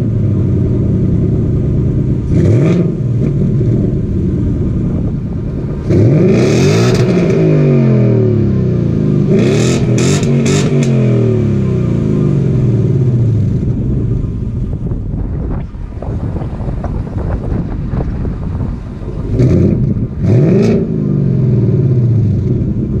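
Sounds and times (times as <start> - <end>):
car engine revving and idling: 0.0 - 23.0.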